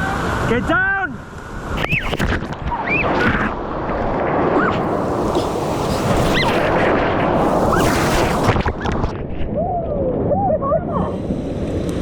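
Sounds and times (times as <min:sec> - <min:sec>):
wind buffeting microphone: 0:01.8 - 0:11.3
whitewater rapids rushing: 0:04.6 - 0:09.1.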